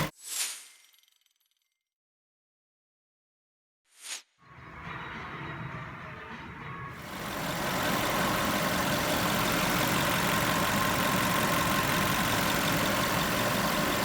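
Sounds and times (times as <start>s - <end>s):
car engine idling: 7.0s - 14.0s.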